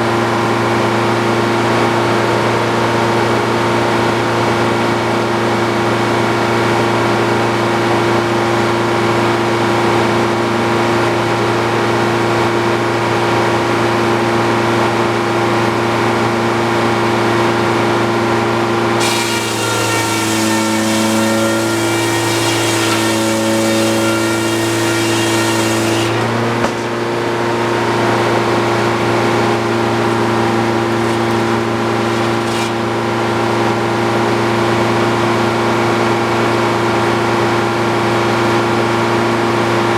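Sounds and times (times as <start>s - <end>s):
sawmill engine running: 18.6s - 34.6s
saw blade cutting log: 19.0s - 27.6s, 29.1s - 33.6s.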